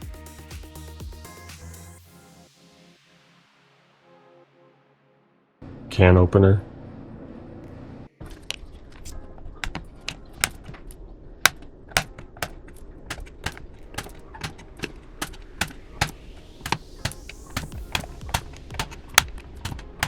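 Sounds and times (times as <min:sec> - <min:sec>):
sharp clicks: 0:08.4 - 0:20.0.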